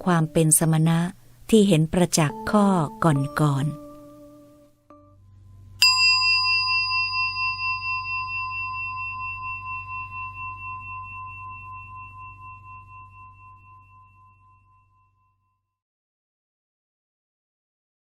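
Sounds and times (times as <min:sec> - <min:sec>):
metal bell ringing: 0:05.8 - 0:15.3.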